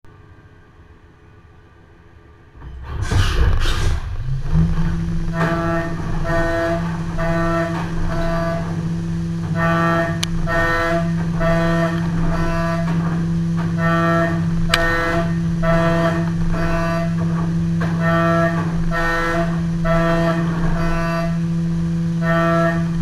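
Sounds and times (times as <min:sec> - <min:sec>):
mill spindle hum: 0:00.1 - 0:23.0
pulsing cutting tone: 0:02.6 - 0:23.0.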